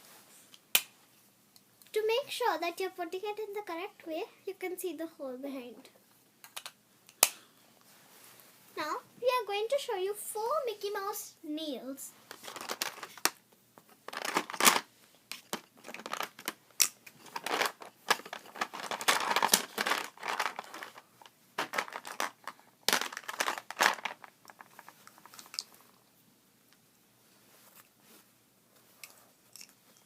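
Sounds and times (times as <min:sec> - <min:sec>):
plastic packaging crinkling: 0:12.3 - 0:13.4, 0:14.1 - 0:25.8.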